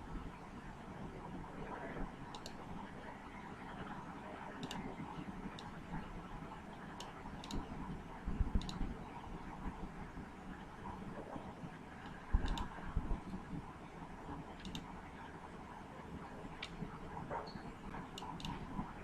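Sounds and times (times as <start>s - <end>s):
low background noise: 0.0s - 19.0s
computer mouse clicks: 2.3s - 2.6s, 4.6s - 4.9s, 5.5s - 5.8s, 7.0s - 7.7s, 8.6s - 8.9s, 12.0s - 12.8s, 14.6s - 14.9s, 16.6s - 16.8s, 18.1s - 18.7s.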